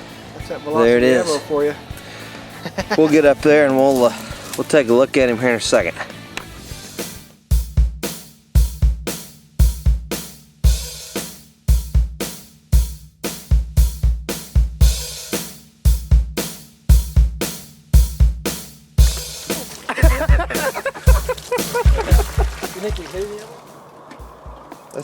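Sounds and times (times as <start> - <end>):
hi-hat cymbals: 6.8 - 21.9
snare drum: 7.0 - 25.0
kick drum: 7.5 - 11.1, 11.7 - 12.2, 12.8 - 15.2, 15.9 - 19.4, 20.0 - 22.6.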